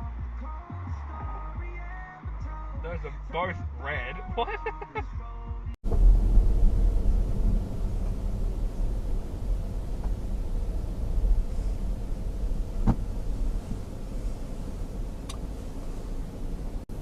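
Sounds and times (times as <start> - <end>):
car engine and road noise: 5.7 - 17.0
faint click: 15.2 - 15.4.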